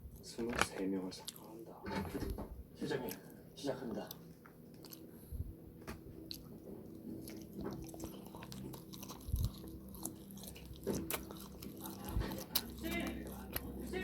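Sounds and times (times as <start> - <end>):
crunchy chewing: 1.0 - 1.7, 2.8 - 5.4, 6.2 - 14.0.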